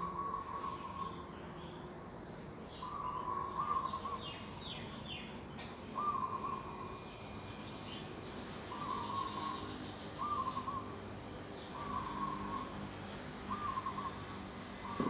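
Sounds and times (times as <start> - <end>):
bird mid-pitched wavering call: 6.0 - 7.0, 8.7 - 10.9, 13.5 - 14.2.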